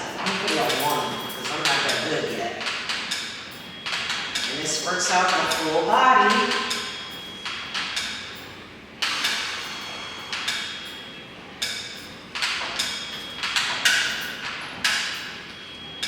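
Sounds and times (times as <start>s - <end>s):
elliptical machine clanking: 0.0s - 16.0s.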